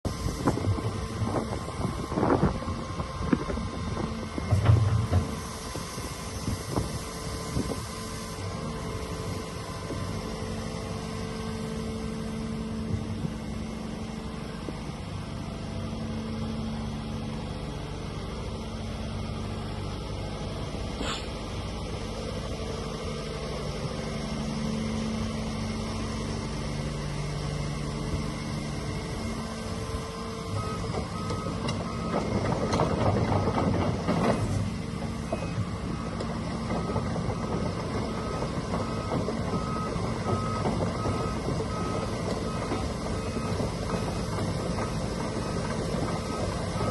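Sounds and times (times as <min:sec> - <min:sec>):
excavator diesel engine running: 0:00.1 - 0:46.9
travel alarm beeping: 0:36.8 - 0:43.6.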